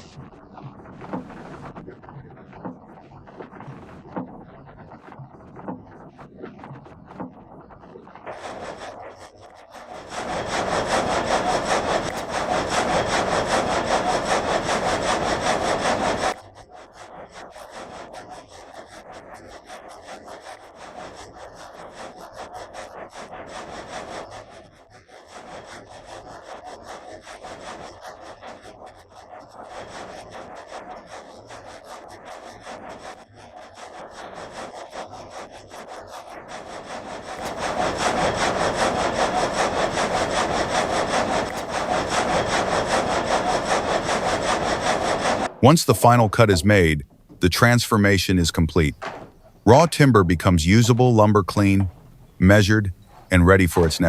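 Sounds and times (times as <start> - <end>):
saw cutting through log: 10.0 - 16.4, 36.5 - 45.6.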